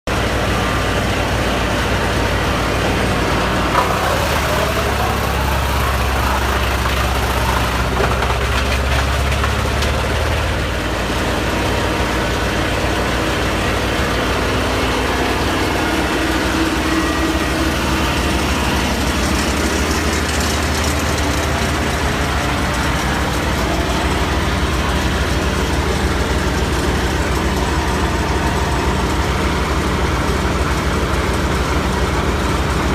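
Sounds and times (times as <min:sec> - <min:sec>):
wood chipper engine running: 0:00.1 - 0:32.9
rising whine: 0:11.0 - 0:31.9.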